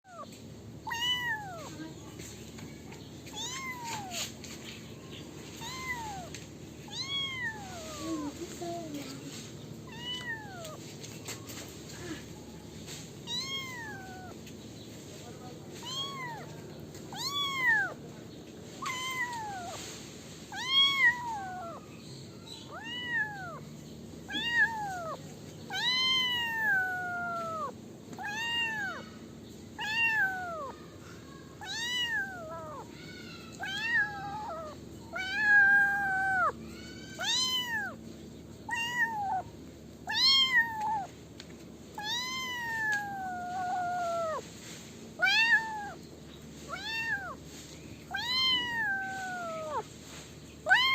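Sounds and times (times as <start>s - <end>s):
kitten meowing: 0.8s - 1.7s, 3.3s - 4.3s, 5.6s - 6.3s, 6.9s - 8.3s, 9.9s - 10.8s, 13.2s - 14.4s, 15.8s - 18.0s, 18.8s - 19.8s, 20.6s - 21.8s, 22.7s - 23.6s, 24.3s - 29.0s, 29.8s - 30.8s, 31.6s - 32.9s, 33.6s - 38.0s, 38.7s - 39.5s, 40.1s - 41.1s, 42.0s - 44.5s, 45.2s - 46.0s, 46.7s - 47.4s, 48.1s - 49.8s, 50.6s - 50.9s.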